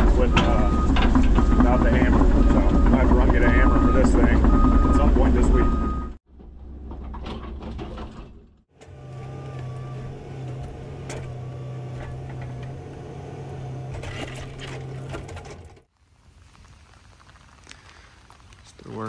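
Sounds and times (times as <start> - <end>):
excavator engine and hydraulics: 0.0 - 6.9, 8.7 - 15.9.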